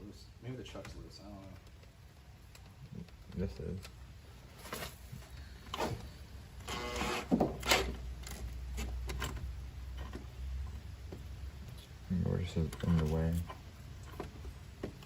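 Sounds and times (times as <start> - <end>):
electric drill spinning: 6.6 - 7.8
drill bit scraping and knocking: 6.6 - 8.0.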